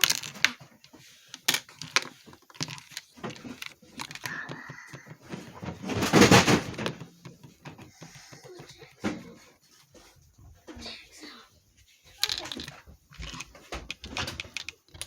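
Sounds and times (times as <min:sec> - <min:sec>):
plastic toy pieces clicking: 0:00.0 - 0:00.6, 0:01.3 - 0:05.2, 0:12.2 - 0:15.0.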